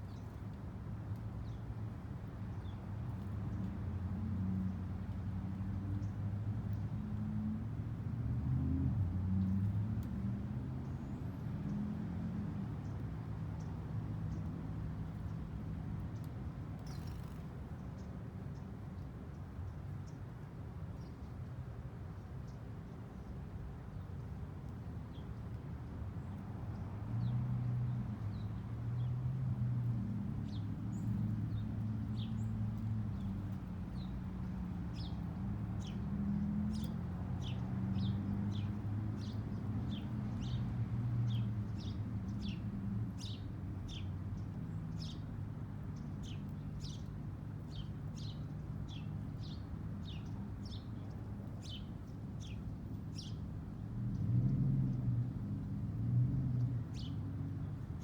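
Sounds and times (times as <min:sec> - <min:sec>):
small birds chirping: 0:30.4 - 0:54.3, 0:56.8 - 0:57.6.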